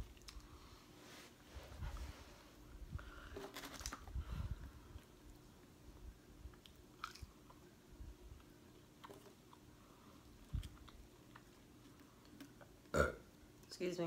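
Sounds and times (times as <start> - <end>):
chewing food: 0.0 - 0.6, 6.4 - 7.7, 8.3 - 12.9.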